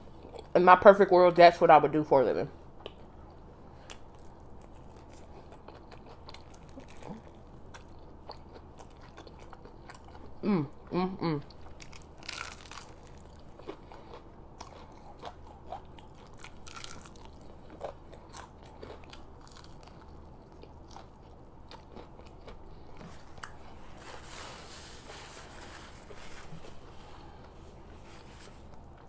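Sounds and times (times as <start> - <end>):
crunchy chewing: 3.8 - 10.4, 11.5 - 23.8.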